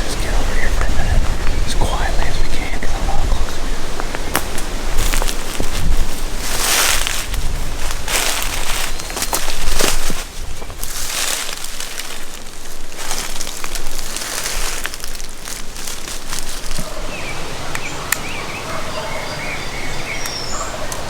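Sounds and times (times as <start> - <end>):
gusty wind through woods: 0.0 - 21.0
distant turkey gobbling: 16.7 - 21.0
small bird chirps: 16.8 - 21.0.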